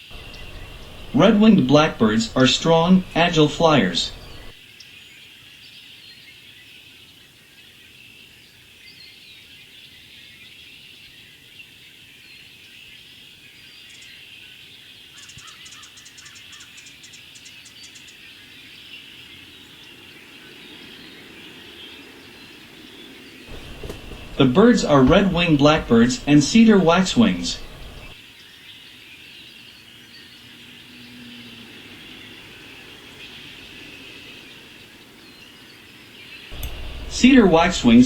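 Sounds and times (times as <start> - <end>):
flock of birds chattering: 0.1 - 4.6, 23.5 - 28.2, 36.5 - 38.0
very high thin bird notes: 36.5 - 38.0.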